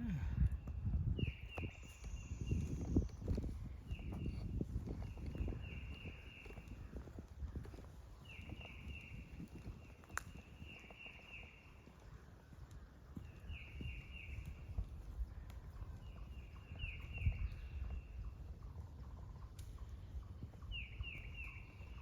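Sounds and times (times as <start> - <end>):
footsteps on trail: 0.4 - 22.0
bird singing: 1.2 - 22.0.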